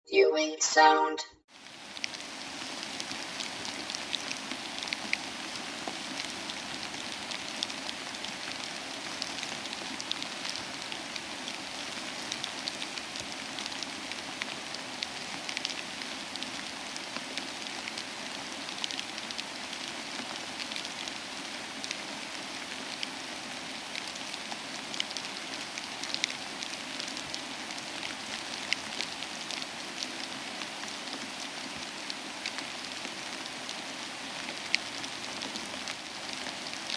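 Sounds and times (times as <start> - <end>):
icy rain and sleet pattering: 1.5 - 36.9.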